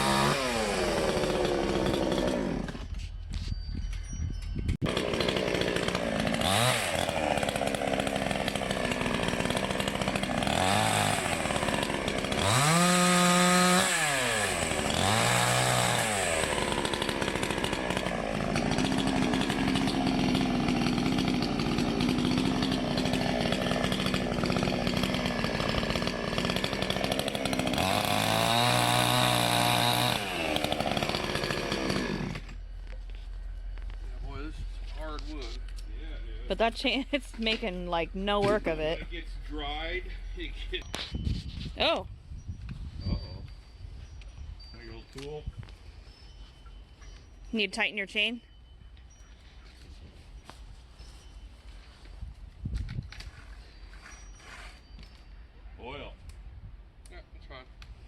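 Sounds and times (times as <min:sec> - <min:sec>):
chainsaw cutting wood: 0:00.0 - 0:02.9, 0:04.8 - 0:33.1, 0:36.5 - 0:39.1.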